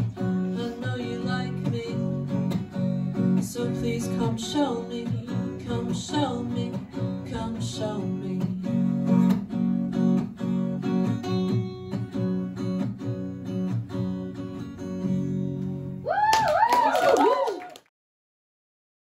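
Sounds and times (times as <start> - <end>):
acoustic guitar strumming chords: 0.0 - 16.0
people clapping: 15.6 - 17.9
people whooping and cheering: 16.0 - 17.9.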